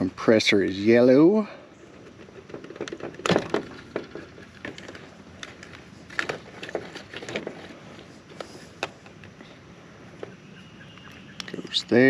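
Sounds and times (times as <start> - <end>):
clicks and scrapes of wire handling: 1.9 - 9.5.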